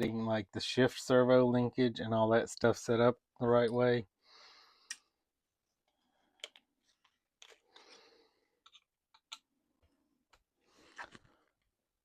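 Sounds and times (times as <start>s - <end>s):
soft rustle of parts: 5.0s - 11.8s.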